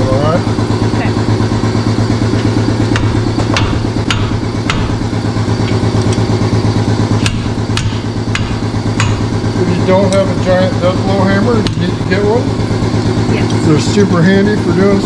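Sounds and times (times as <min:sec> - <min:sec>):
air compressor droning: 0:00.0 - 0:15.0
heavy hammer striking metal: 0:02.5 - 0:05.3, 0:07.1 - 0:10.4, 0:11.0 - 0:12.3.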